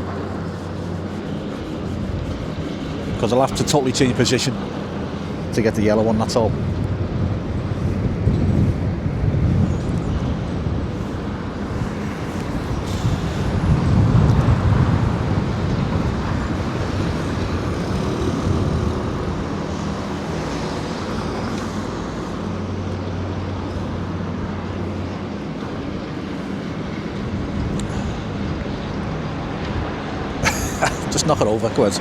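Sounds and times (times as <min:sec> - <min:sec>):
engine running: 0:00.0 - 0:08.0
street traffic noise: 0:00.0 - 0:32.0
wind rumble on microphone: 0:00.0 - 0:32.0.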